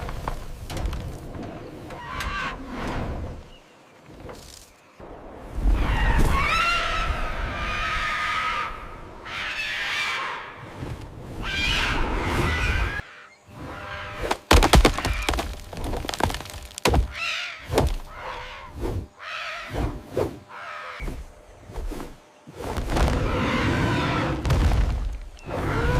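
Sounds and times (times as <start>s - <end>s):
sharp knocks and thuds: 14.2s - 18.1s
harsh animal cries: 17.0s - 19.9s.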